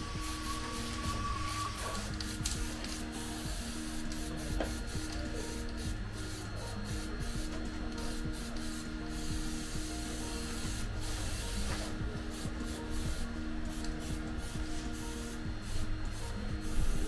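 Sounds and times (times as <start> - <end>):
background music melody: 0.0 - 17.0.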